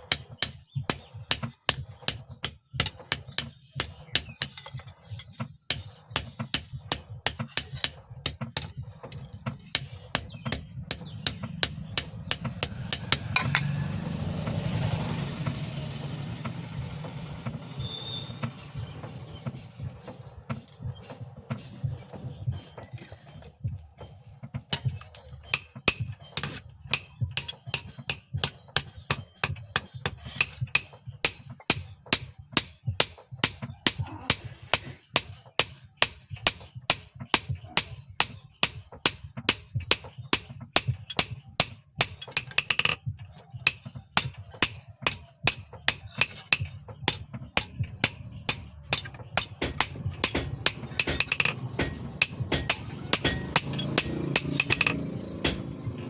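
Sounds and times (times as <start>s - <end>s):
hammer striking steel on anvil: 5.7s - 8.8s, 9.5s - 13.8s, 24.7s - 43.0s, 43.6s - 55.9s.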